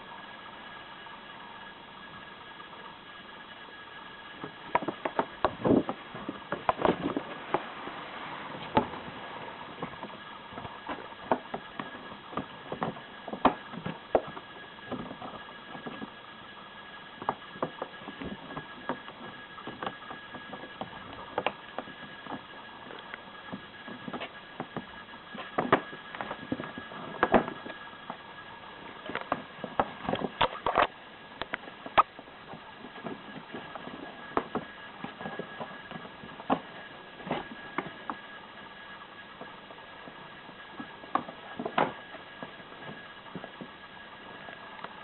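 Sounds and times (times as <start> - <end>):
faint high whine: 0.0 - 45.0.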